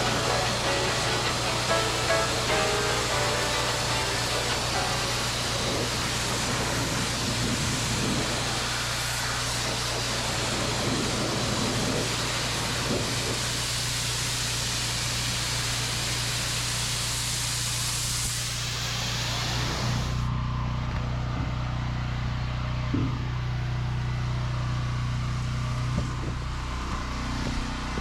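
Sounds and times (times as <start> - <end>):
high-pressure water jet hissing: 0.0 - 20.3
pressure washer motor hum: 0.0 - 28.0.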